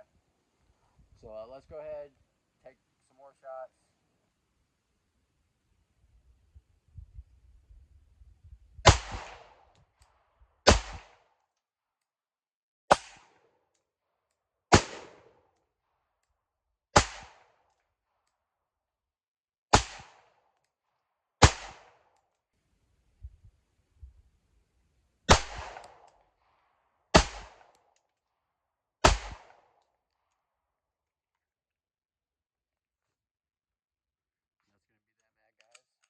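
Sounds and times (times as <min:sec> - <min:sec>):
pistol shots: 0:08.8 - 0:09.6, 0:10.6 - 0:11.3, 0:14.7 - 0:15.3, 0:17.0 - 0:17.6, 0:19.7 - 0:20.3, 0:21.4 - 0:22.1, 0:25.3 - 0:26.2, 0:27.1 - 0:27.8, 0:29.0 - 0:29.8.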